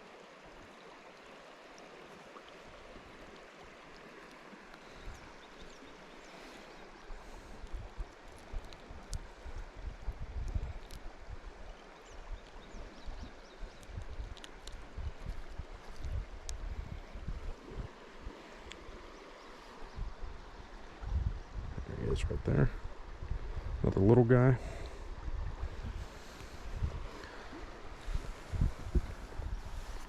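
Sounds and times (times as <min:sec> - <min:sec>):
shallow river water running: 0:00.0 - 0:30.0
wind buffeting microphone: 0:07.6 - 0:11.6, 0:12.6 - 0:18.0, 0:19.9 - 0:30.0.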